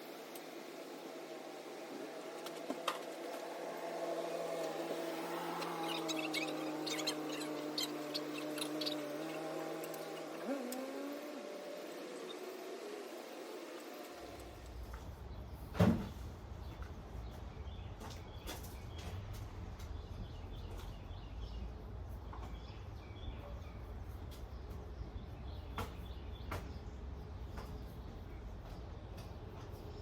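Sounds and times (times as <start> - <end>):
faint bird chirps: 5.3 - 11.4.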